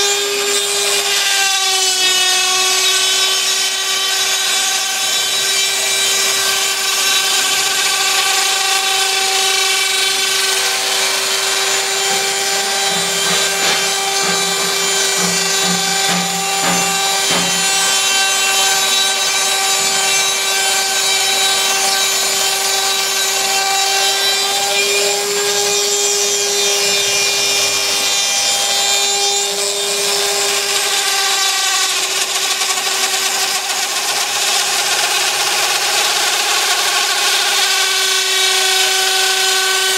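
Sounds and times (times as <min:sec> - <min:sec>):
router bit rasping through workpiece: 0:00.1 - 0:23.9.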